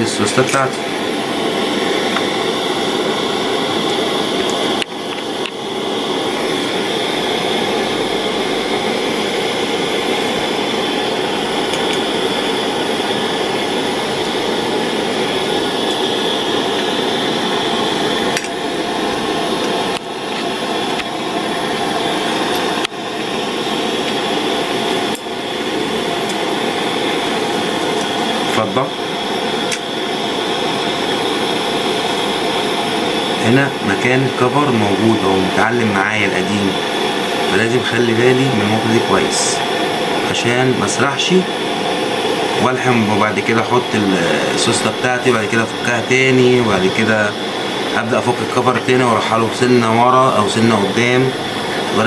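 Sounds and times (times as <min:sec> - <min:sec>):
steady hissing noise: 0:00.0 - 0:52.0.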